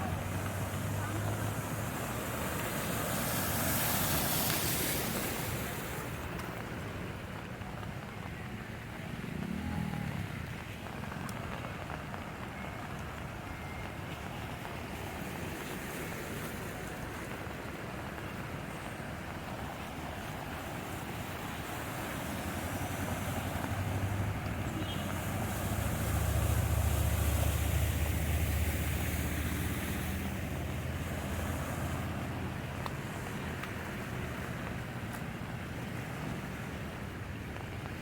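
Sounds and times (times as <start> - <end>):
water washing: 0.0 - 7.4, 13.5 - 38.0
heavy vehicle engine rumble: 0.0 - 38.0.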